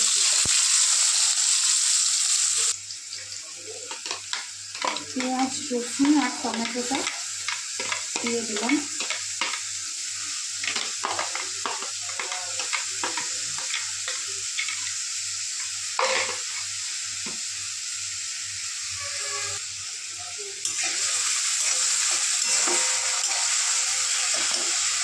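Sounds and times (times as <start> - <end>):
food sizzling in hot oil: 0.0 - 25.0
spatula scraping a pan: 3.9 - 9.6, 18.9 - 19.6, 21.6 - 25.0.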